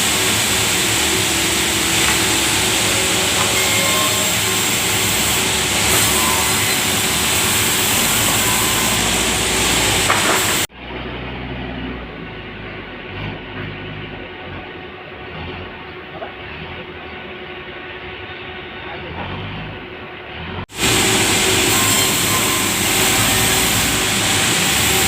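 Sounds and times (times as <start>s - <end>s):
sawmill saw cutting log: 0.0s - 10.7s, 20.7s - 25.0s.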